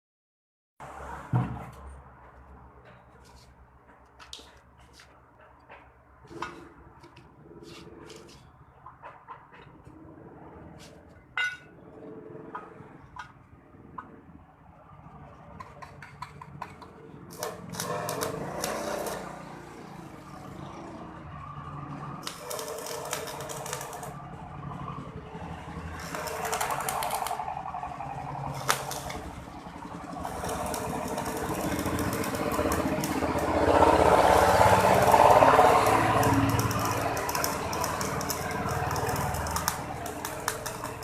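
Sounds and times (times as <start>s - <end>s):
welding arc crackling: 17.3s - 20.3s, 22.2s - 24.4s, 25.7s - 41.0s.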